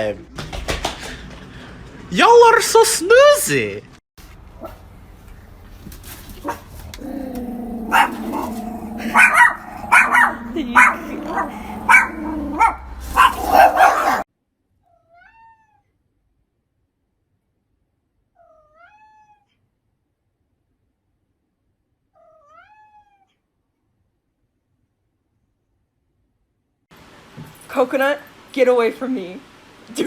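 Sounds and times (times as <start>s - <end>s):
dog barking: 4.6s - 4.8s, 6.4s - 14.2s
cat meowing faintly: 14.9s - 16.0s, 18.4s - 19.6s, 22.2s - 23.4s.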